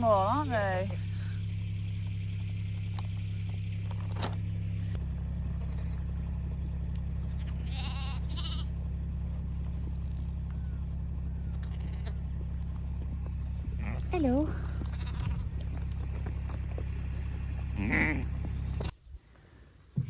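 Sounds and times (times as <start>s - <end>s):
steady low rumble: 0.0s - 19.2s
lamb bleating: 5.4s - 6.1s, 7.3s - 8.7s, 11.3s - 12.4s, 13.5s - 15.8s, 17.7s - 18.9s.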